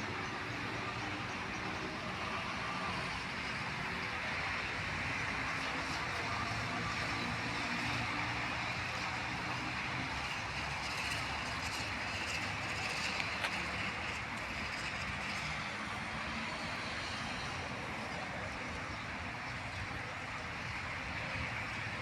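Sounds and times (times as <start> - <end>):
town background rushing noise: 0.0 - 22.0.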